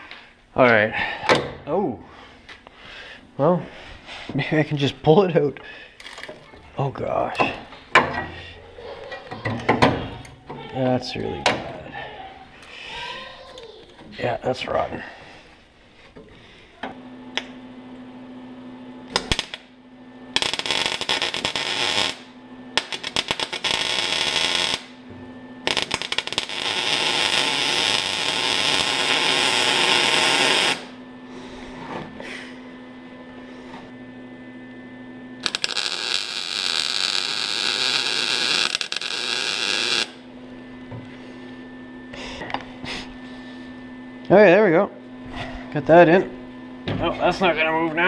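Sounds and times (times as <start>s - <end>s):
power tool on sheet metal: 20.4s - 25.0s, 25.6s - 31.0s, 35.4s - 40.2s.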